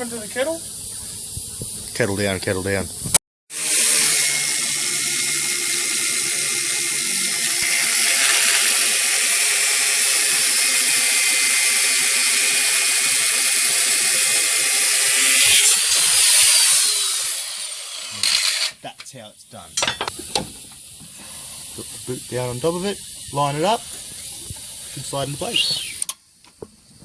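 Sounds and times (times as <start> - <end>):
angle grinder cutting steel: 3.5 - 18.8.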